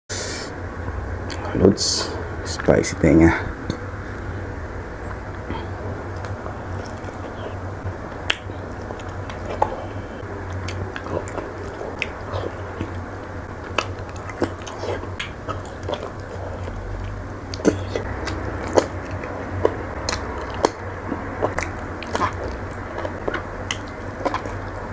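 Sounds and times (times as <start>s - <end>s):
low steady hum: 0.1s - 24.9s
close chewing mouth sounds: 5.0s - 24.9s
cartilage crunching: 5.1s - 24.9s.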